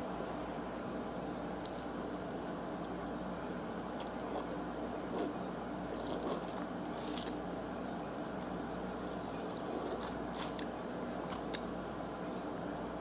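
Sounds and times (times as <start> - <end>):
steady low hum: 0.0 - 13.0
person chewing food: 3.8 - 7.4, 8.8 - 11.6.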